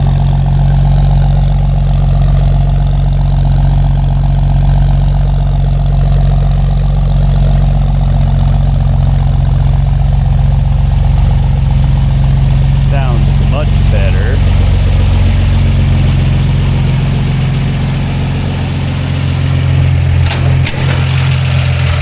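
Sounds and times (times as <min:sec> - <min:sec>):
truck engine idling: 0:00.0 - 0:22.0.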